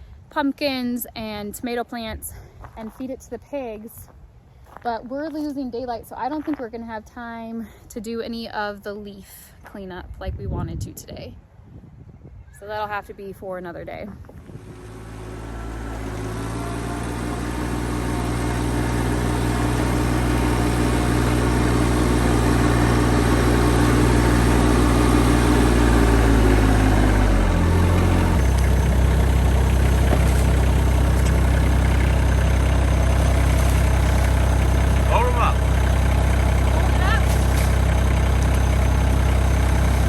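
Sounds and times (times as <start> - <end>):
tractor diesel engine running: 14.4 - 40.0.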